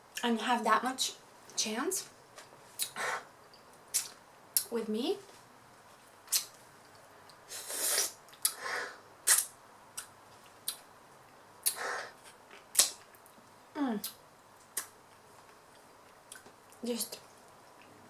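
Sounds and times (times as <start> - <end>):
mouth clicks and lip smacks: 6.3 - 8.6, 9.3 - 10.8, 12.6 - 13.3.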